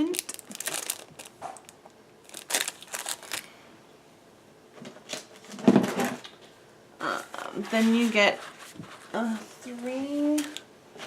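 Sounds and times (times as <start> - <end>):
paper rustling and crinkling: 0.3 - 3.5, 7.6 - 11.0.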